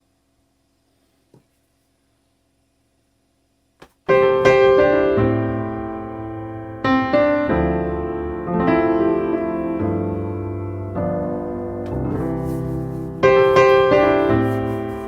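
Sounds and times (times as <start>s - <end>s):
piano chords: 4.1s - 15.0s.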